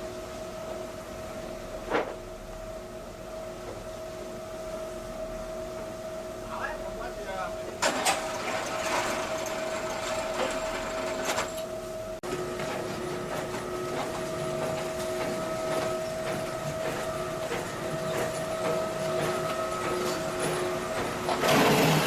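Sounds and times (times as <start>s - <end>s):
block machine humming: 12.2s - 22.0s
machine clattering and knocking: 12.3s - 22.0s.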